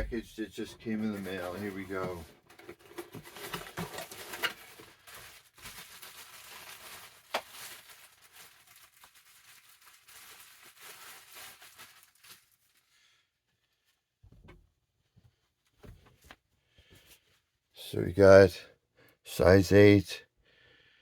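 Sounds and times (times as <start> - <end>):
packaging crinkling and tearing: 2.8 - 12.9.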